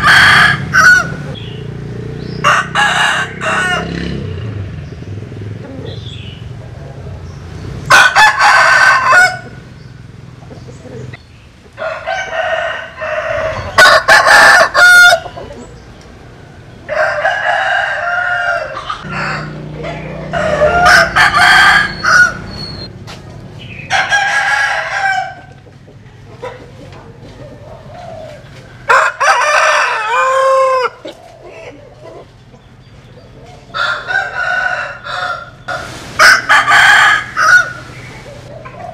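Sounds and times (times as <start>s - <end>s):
roosters crowing: 0.0s - 4.8s, 7.8s - 22.9s, 23.6s - 38.9s
hens clucking: 10.3s - 12.0s, 13.1s - 16.1s, 25.0s - 38.9s.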